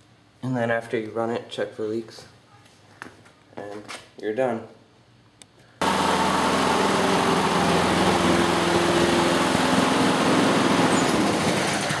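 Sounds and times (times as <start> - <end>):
lawn mower engine running: 5.8 - 12.0.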